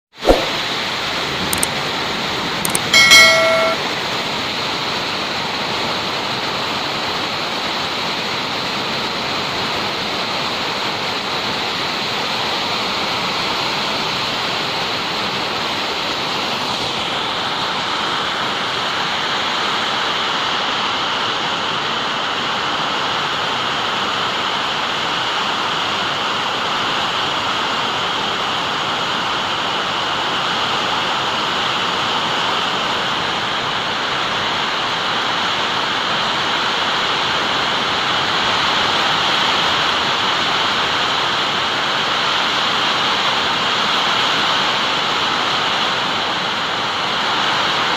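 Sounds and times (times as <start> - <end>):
bright chime: 2.7 - 3.8
steady rain: 5.6 - 47.9.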